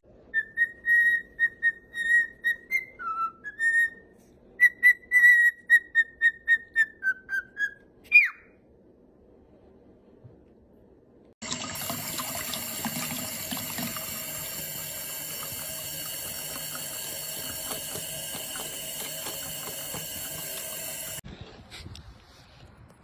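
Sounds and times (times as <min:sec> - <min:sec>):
tap running into sink: 0:11.4 - 0:21.2.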